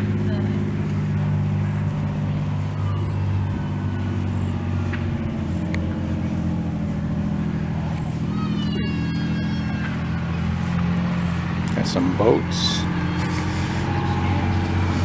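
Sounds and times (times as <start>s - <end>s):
engine running at low revs: 0.0s - 15.0s.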